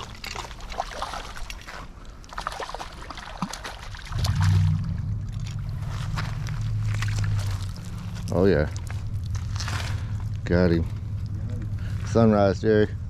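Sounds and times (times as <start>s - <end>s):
water splashing: 0.0s - 12.2s
loud low steady hum: 4.1s - 13.0s.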